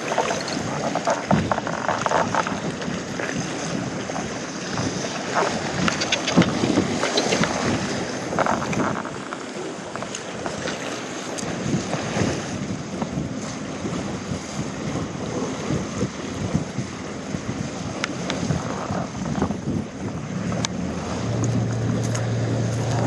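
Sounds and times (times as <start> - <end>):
sea waves: 0.0 - 23.0
wind buffeting microphone: 0.0 - 23.0
steady low hum: 19.5 - 23.0.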